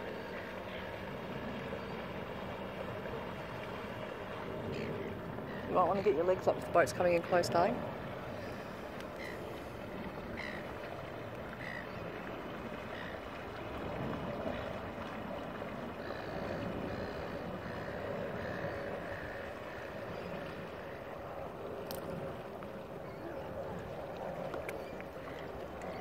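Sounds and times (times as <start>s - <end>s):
motorboat engine running: 0.0s - 26.0s
water and wind rushing: 0.0s - 26.0s.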